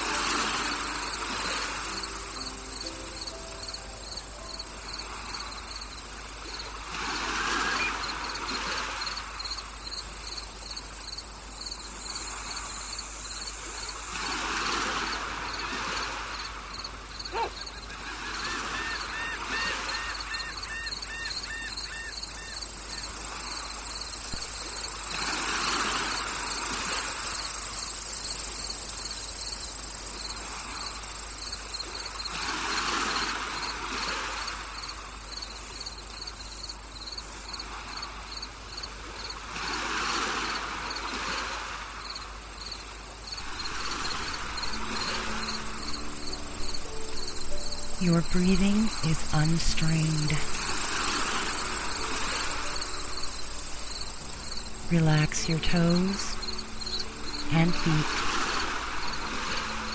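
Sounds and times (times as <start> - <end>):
rushing noise swells: 0.0 - 5.7, 43.4 - 48.0, 50.4 - 55.2, 56.3 - 59.9
cricket-like chirps: 0.0 - 59.9
insect drone: 0.0 - 59.9.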